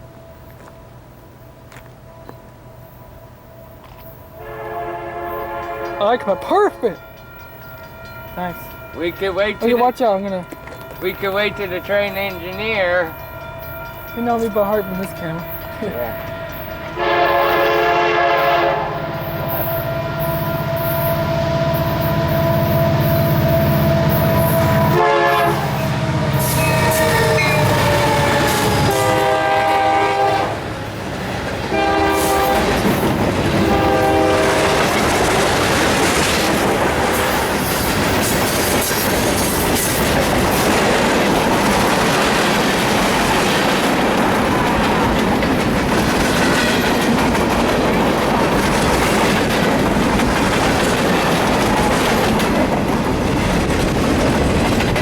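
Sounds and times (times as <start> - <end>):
train rumbling past: 0.0 - 55.0
train horn blasts: 4.4 - 30.7, 31.7 - 35.0
wheels clacking on rails: 5.1 - 55.0.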